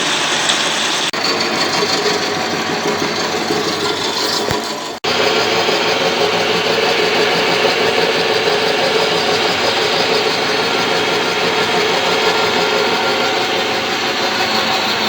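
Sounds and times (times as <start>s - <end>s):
machine rasping: 0.0s - 15.0s.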